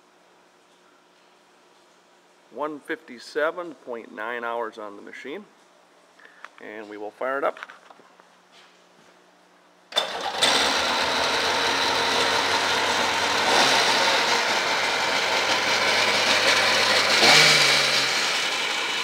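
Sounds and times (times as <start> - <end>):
watercraft engine starting and revving: 10.0 - 19.0.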